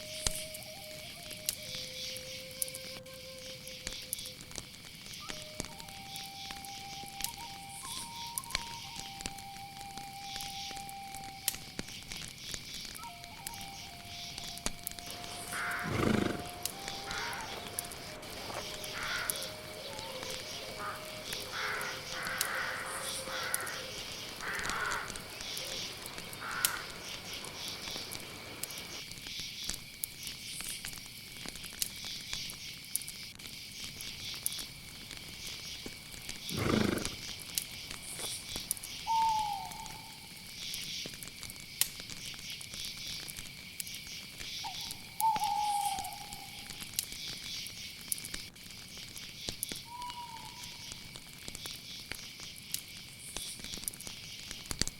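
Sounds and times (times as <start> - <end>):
crickets chirring: 0.0 - 54.9
bird short falling call: 15.3 - 28.0.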